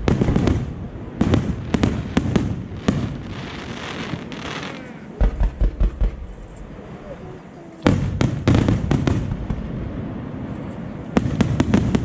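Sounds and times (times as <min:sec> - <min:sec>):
deep fireworks booms: 0:00.0 - 0:07.2, 0:07.8 - 0:12.0
fireworks hiss: 0:00.0 - 0:07.2
fireworks bangs: 0:00.0 - 0:12.0.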